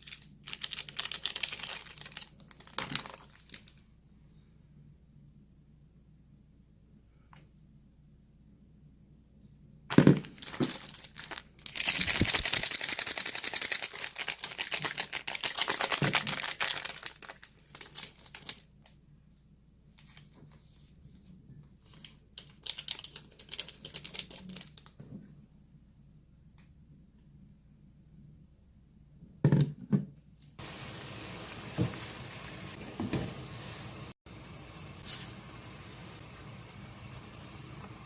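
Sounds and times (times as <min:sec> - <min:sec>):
plastic packaging crinkling: 0:00.0 - 0:03.9, 0:09.9 - 0:19.0, 0:21.8 - 0:24.9.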